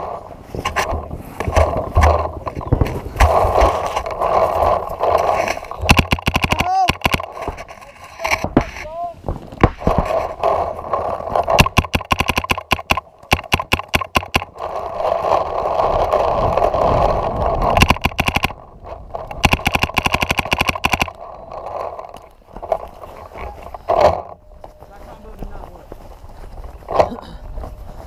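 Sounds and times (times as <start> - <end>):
steady rushing noise: 0.0 - 26.9
paintball markers firing: 0.7 - 7.7, 9.6 - 16.1, 17.6 - 22.7.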